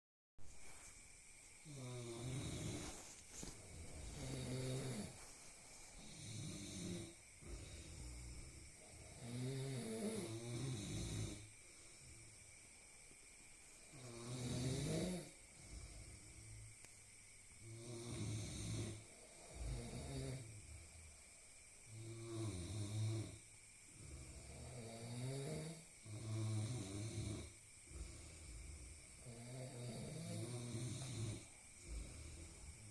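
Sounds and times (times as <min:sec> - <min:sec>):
rattling snores: 0:01.6 - 0:05.2, 0:06.0 - 0:11.6, 0:13.8 - 0:16.6, 0:17.6 - 0:21.0, 0:21.9 - 0:32.9.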